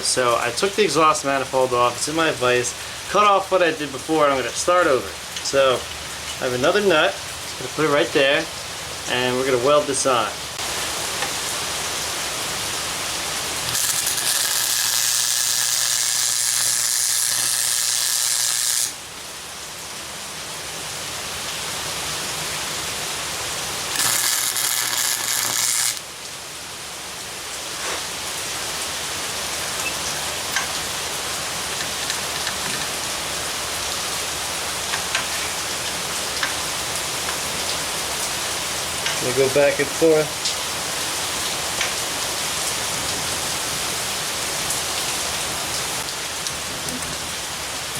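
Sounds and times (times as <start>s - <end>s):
steady background hiss: 0.0s - 47.9s
welder arc crackling hiss: 10.6s - 19.1s, 23.5s - 26.1s, 29.6s - 37.4s.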